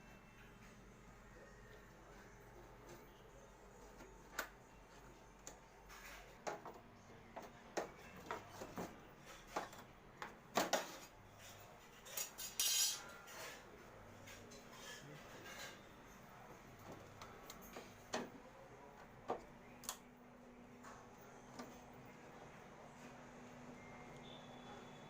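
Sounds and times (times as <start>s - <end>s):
metal tools clinking: 12.0s - 13.1s.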